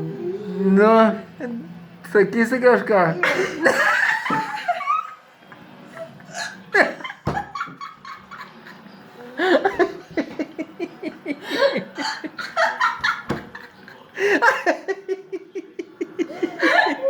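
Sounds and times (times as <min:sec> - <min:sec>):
laughter and giggles: 0:03.2 - 0:05.2, 0:05.9 - 0:17.0.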